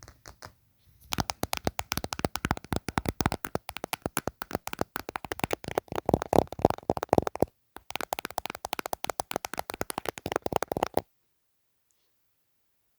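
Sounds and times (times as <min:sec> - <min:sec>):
rapid finger tapping on device: 0:01.1 - 0:11.0.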